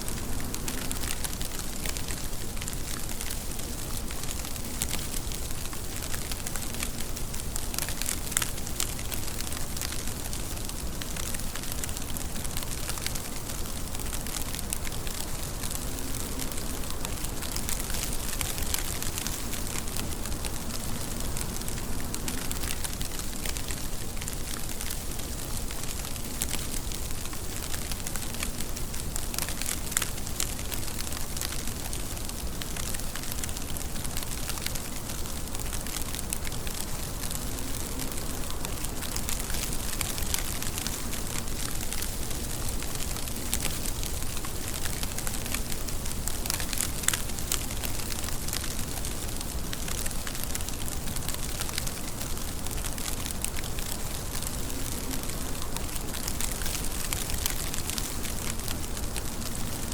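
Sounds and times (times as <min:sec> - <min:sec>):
rain falling: 0:00.0 - 0:59.9
raindrops pattering on a surface: 0:00.0 - 0:59.9.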